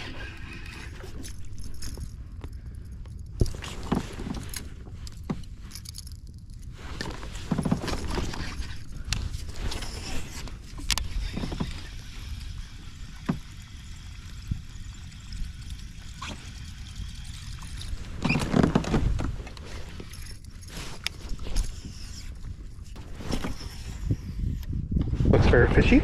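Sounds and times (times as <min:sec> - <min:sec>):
water lapping against a hull: 0:07.1 - 0:24.5.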